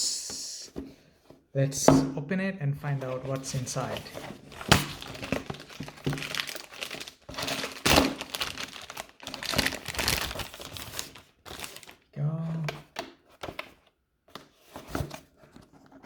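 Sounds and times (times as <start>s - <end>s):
packaging crinkling and rustling: 3.0s - 12.1s.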